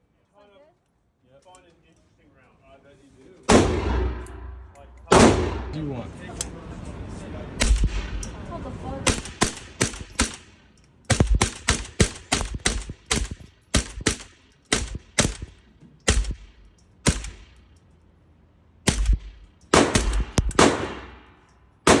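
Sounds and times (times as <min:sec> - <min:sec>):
rifle shots: 0:03.5 - 0:05.9, 0:07.6 - 0:08.4, 0:09.1 - 0:17.7, 0:18.8 - 0:22.0.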